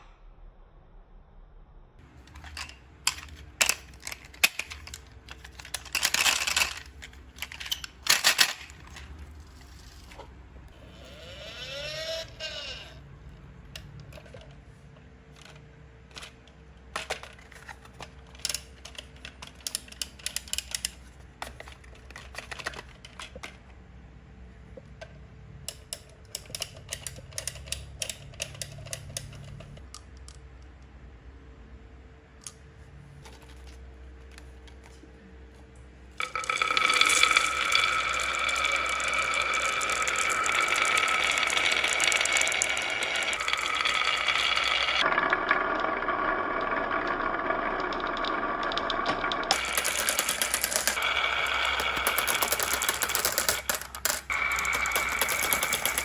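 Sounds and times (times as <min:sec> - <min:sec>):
marbles clicking along track: 0:02.4 - 0:09.1, 0:36.2 - 0:56.0.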